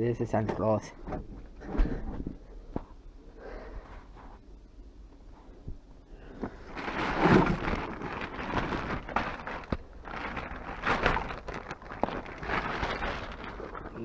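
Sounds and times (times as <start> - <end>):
household items rustling and clattering: 5.3 - 14.0.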